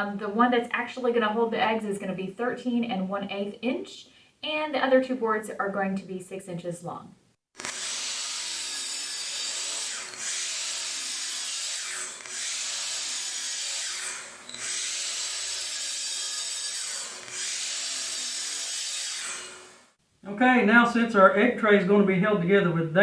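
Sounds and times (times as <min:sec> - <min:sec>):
miter saw cutting wood: 0:07.6 - 0:20.0.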